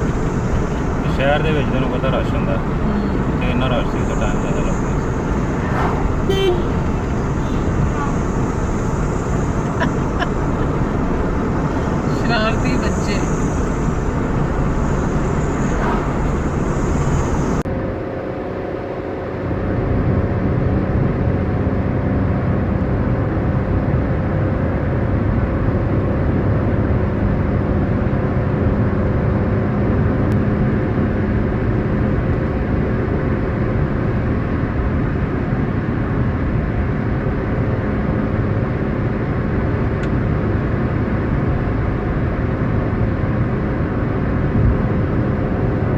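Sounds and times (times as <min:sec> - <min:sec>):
tyre and road noise: 0:00.0 - 0:18.0
car engine hum: 0:00.0 - 0:45.9.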